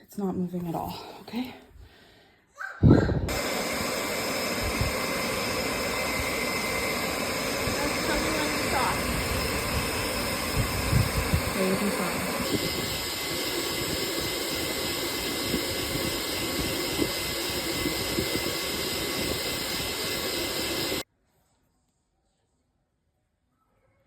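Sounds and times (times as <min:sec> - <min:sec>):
hair dryer blowing: 0:03.1 - 0:21.0.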